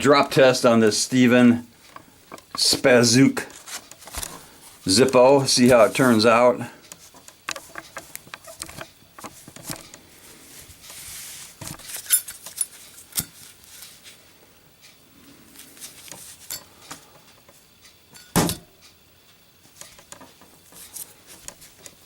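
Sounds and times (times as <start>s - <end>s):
metallic clicks and clinks: 11.8s - 14.0s, 16.0s - 19.0s.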